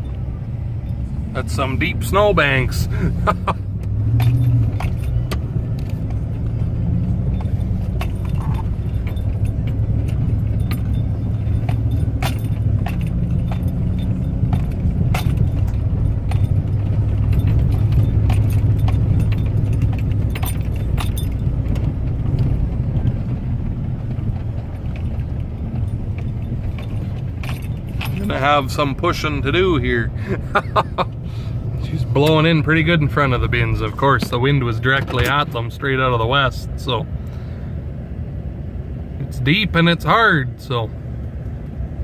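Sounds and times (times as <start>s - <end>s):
vehicle engine running: 0.0s - 42.0s
rattling clicks: 3.7s - 29.6s.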